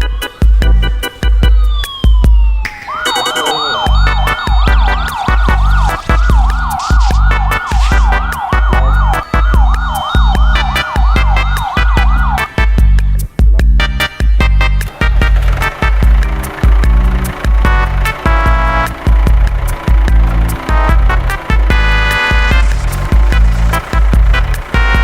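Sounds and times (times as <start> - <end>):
siren-like wail: 0.0 - 12.5
electronic music with heavy bass: 0.0 - 17.0, 20.9 - 25.0.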